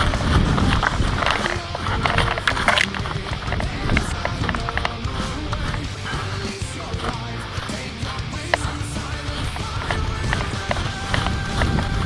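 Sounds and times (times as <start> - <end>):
background music: 0.0 - 12.0
quick footsteps: 0.0 - 12.0
rustling: 0.0 - 12.0.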